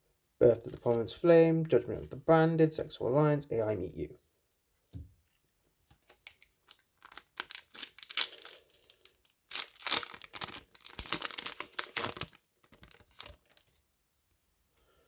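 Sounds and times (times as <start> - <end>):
foil wrapper tearing and crinkling: 5.9 - 13.8.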